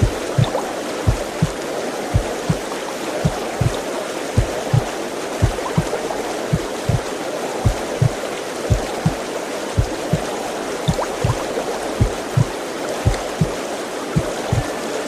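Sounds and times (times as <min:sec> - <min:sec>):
slow double heartbeat: 0:00.0 - 0:01.6, 0:02.2 - 0:03.8, 0:04.4 - 0:09.2, 0:09.8 - 0:10.3, 0:10.9 - 0:13.5, 0:14.2 - 0:14.7.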